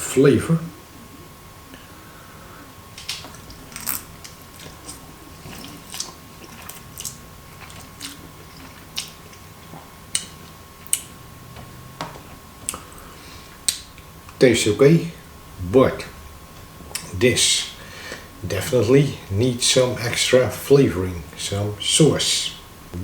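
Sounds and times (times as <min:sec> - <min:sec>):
person chewing noodles: 0:03.2 - 0:11.2.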